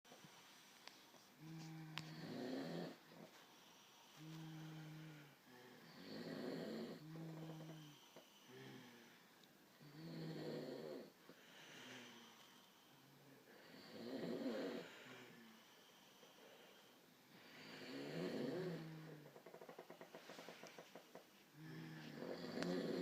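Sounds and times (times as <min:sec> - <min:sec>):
quiet breaths: 0:00.1 - 0:23.0
person snoring: 0:01.4 - 0:03.3, 0:04.2 - 0:09.2, 0:09.8 - 0:12.4, 0:13.2 - 0:15.6, 0:17.3 - 0:20.5, 0:21.5 - 0:23.0.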